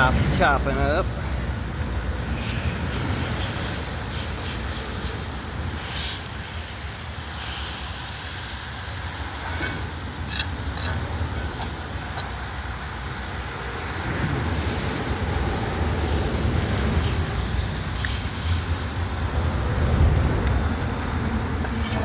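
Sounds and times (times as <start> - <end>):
meat sizzling in a pan: 3.6 - 14.0.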